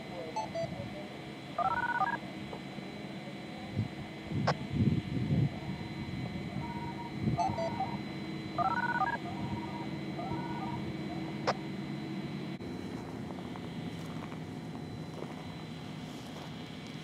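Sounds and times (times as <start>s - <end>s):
dual-pitch signalling beeps: 0.4s - 0.8s, 1.6s - 2.2s, 5.9s - 12.6s.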